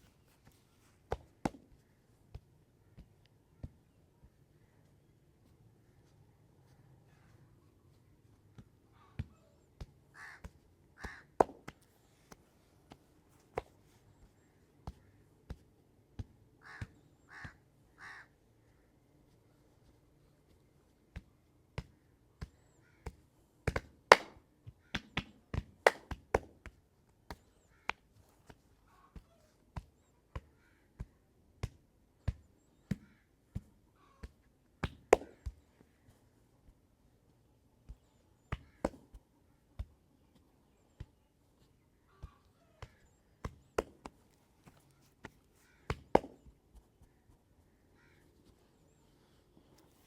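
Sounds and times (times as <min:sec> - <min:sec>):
hands slapping in massage: 0:11.0 - 0:13.8, 0:23.1 - 0:28.6, 0:34.3 - 0:35.6, 0:43.4 - 0:46.6.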